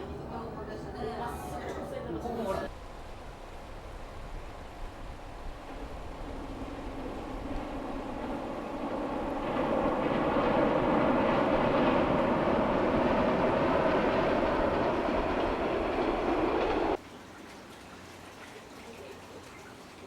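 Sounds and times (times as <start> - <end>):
diesel railcar running on track: 0.0 - 17.0.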